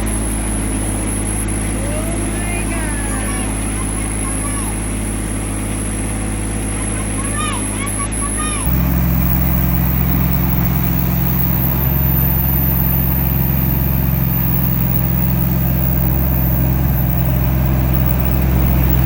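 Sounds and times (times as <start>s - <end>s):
engine running steadily: 0.0s - 19.0s.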